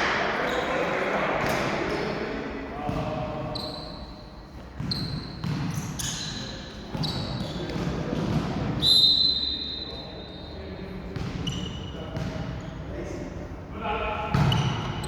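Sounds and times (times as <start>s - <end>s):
murmur of players' voices: 0.0s - 15.0s
sneakers squealing on court floor: 2.9s - 10.6s, 11.2s - 12.9s, 14.3s - 15.0s.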